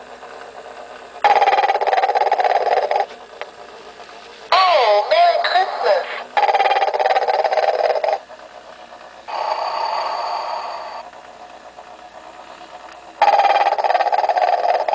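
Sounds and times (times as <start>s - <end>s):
rattling snore: 1.2s - 3.1s, 6.4s - 8.2s, 13.2s - 14.9s.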